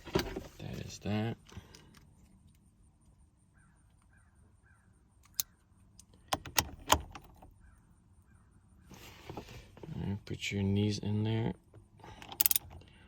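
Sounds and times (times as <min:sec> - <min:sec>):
sharp metallic clicks and knocks: 0:12.2 - 0:12.8.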